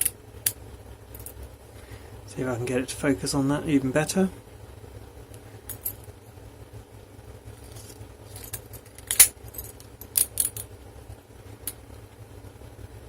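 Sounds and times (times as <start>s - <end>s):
low steady hum: 0.0s - 13.0s
lock-picking tools clinking: 8.4s - 10.6s.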